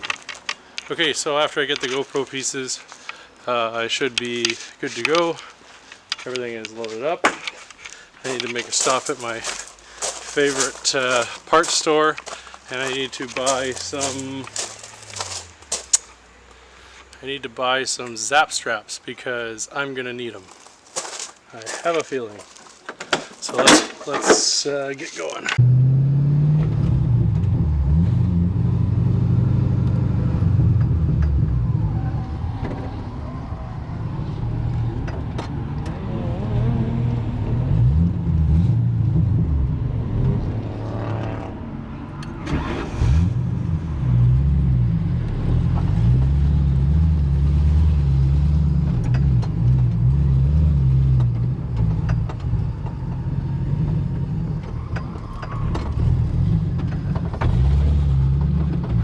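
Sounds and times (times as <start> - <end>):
vehicle engine running: 12.3 - 16.0.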